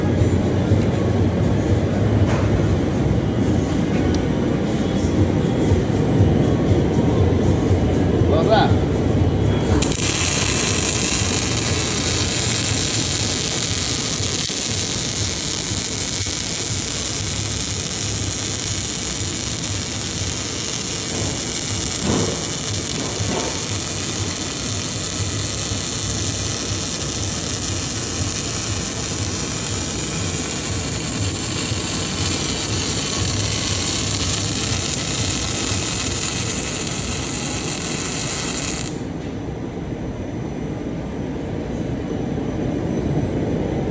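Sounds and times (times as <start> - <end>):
low machine hum: 0.0 - 43.9
welding arc hissing: 9.6 - 39.1.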